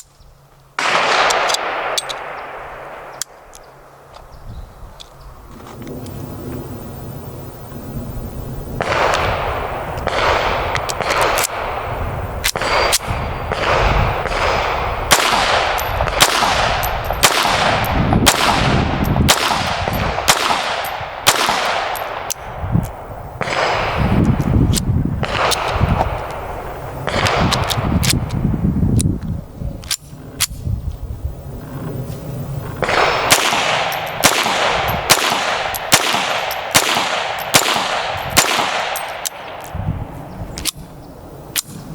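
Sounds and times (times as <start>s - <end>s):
sharp faint cracks: 0.0s - 4.3s, 8.8s - 31.0s, 31.6s - 41.9s
pistol shots echoing: 0.8s - 4.1s, 8.8s - 22.6s, 23.4s - 24.2s, 25.2s - 28.2s, 32.8s - 39.7s.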